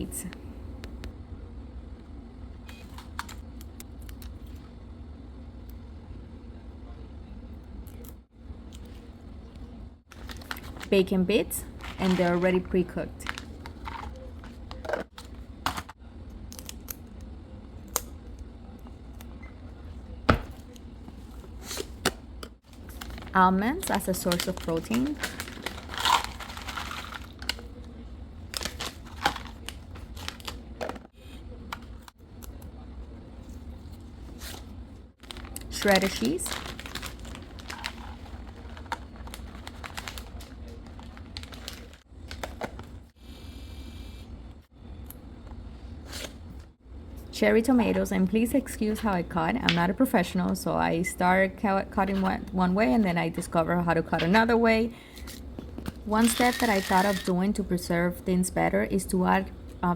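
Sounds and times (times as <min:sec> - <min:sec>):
steady low hum: 0:00.0 - 0:59.9
plastic packaging crinkling: 0:10.1 - 0:10.9, 0:11.6 - 0:14.3, 0:22.7 - 0:27.8, 0:28.5 - 0:30.9, 0:35.2 - 0:42.8, 0:56.2 - 0:57.3.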